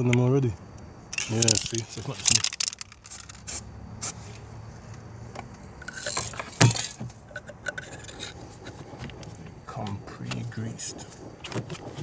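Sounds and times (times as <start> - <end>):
plastic and metal clicks and rattles: 1.1 - 3.6, 5.4 - 9.4.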